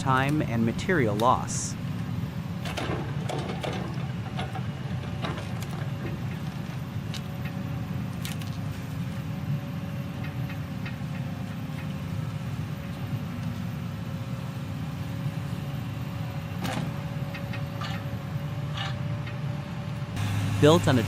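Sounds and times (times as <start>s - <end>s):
diesel engine running: 0.0s - 21.0s
machine knocks and clicks: 2.6s - 6.5s.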